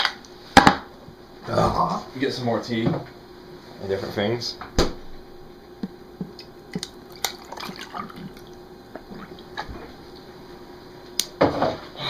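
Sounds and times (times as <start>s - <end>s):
tea pouring into a cup: 6.8s - 9.5s.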